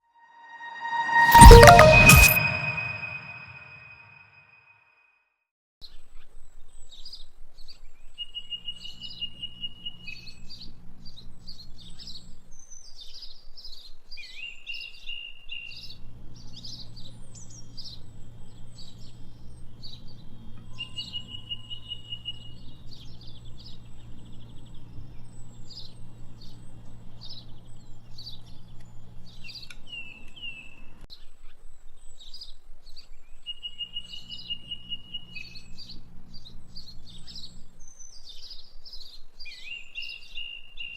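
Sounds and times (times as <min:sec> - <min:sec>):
songbirds chirping: 0:08.3 - 0:40.9.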